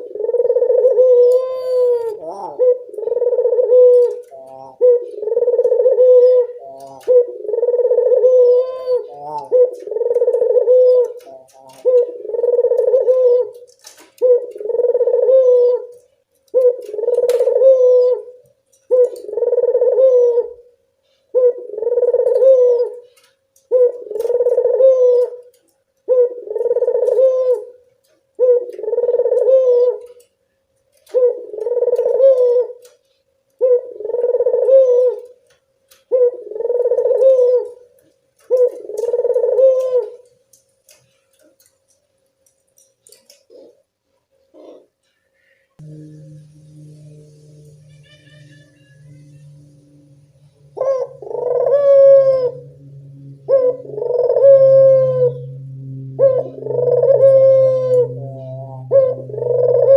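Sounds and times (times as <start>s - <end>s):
dove cooing: 0.0s - 20.7s, 21.3s - 30.3s, 31.0s - 33.0s, 33.6s - 40.3s, 43.3s - 43.8s, 44.5s - 45.0s, 45.8s - 59.9s.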